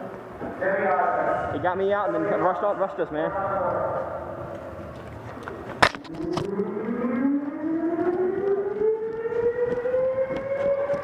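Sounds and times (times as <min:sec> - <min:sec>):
siren winding up: 0:05.9 - 0:11.0.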